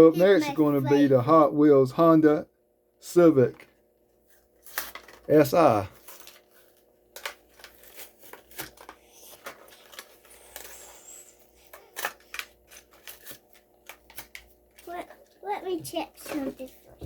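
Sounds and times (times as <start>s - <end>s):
plastic packaging crinkling: 4.6s - 15.4s.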